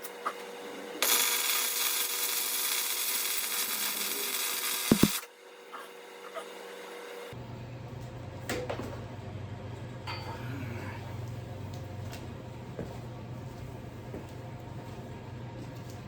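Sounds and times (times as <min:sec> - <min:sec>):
welding arc crackling hiss: 0:00.0 - 0:07.3.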